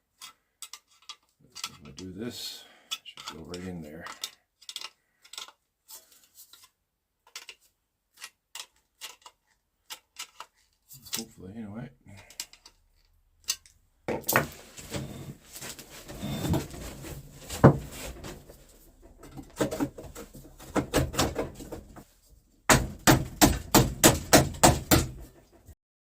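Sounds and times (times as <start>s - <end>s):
metal stovepipe knocking and rattling: 22.7s - 25.5s.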